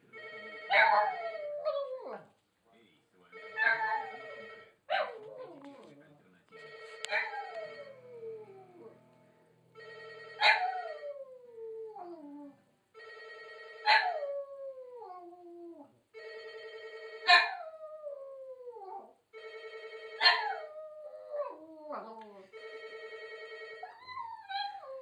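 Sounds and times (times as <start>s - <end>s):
trilling phone ringtone: 0.0s - 1.3s, 3.3s - 4.8s, 6.6s - 8.0s, 9.8s - 11.0s, 13.0s - 14.1s, 16.2s - 17.5s, 19.3s - 20.5s, 22.5s - 24.0s
dog howling: 20.2s - 22.4s, 23.8s - 25.0s.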